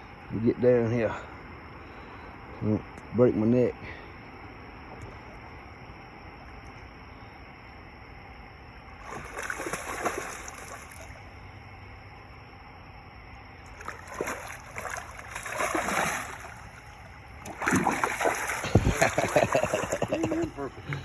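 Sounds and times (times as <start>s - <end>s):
fish splashing at water surface: 9.0s - 11.2s, 13.7s - 21.0s.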